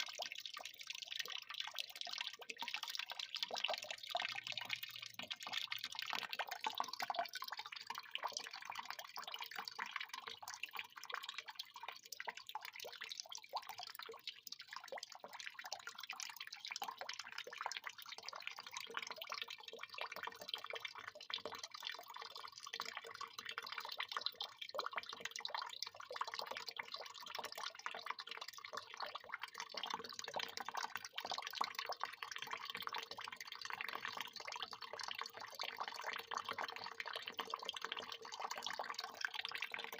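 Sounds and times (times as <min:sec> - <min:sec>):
water pouring and splashing: 0:00.0 - 0:11.4.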